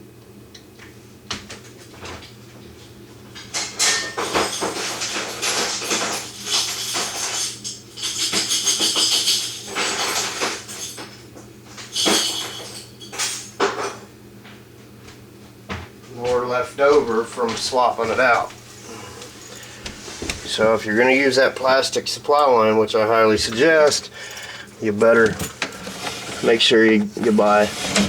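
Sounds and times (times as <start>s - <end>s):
metal fittings jingling and clattering: 3.8s - 11.1s, 19.2s - 21.8s, 23.1s - 28.0s.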